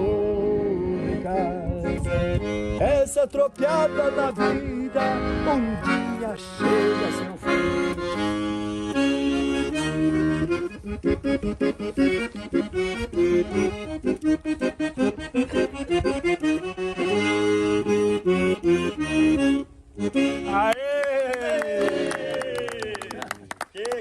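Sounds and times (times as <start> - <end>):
accordion folk music: 0.0 - 20.8, 21.6 - 22.4.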